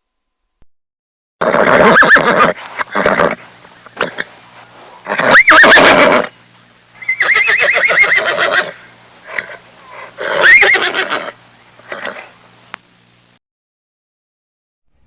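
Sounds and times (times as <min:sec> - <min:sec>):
horse neighing: 0:01.4 - 0:04.4, 0:05.0 - 0:06.4, 0:07.0 - 0:12.4.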